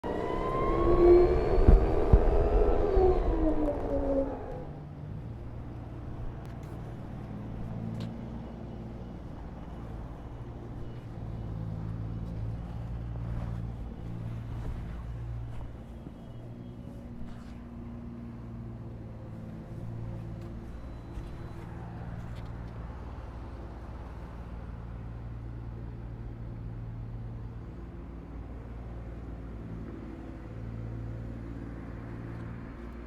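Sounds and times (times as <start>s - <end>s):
motor vehicles running: 0.0s - 33.0s.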